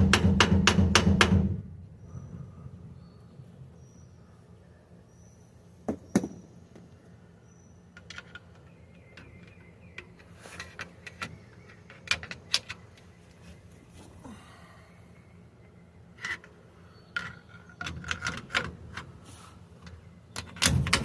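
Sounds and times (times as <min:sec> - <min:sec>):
loud metal knocks: 0:00.0 - 0:01.7, 0:20.6 - 0:21.0.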